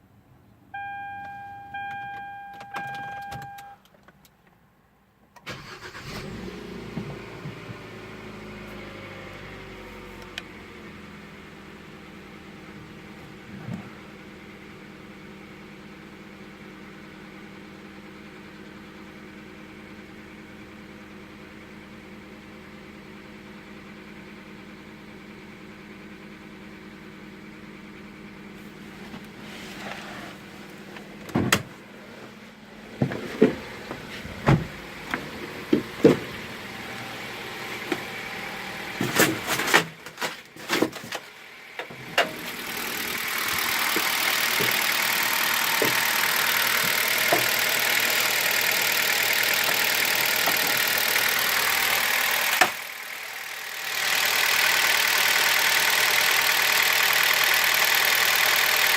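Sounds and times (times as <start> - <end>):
car engine humming: 0.0 - 58.9
irregular clunks and knocks: 31.2 - 31.8, 33.0 - 36.5.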